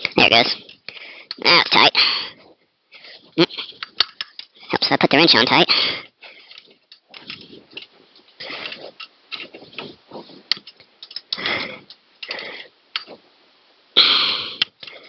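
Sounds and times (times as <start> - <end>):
wrench clicking and scraping: 3.8 - 4.6, 6.3 - 13.2.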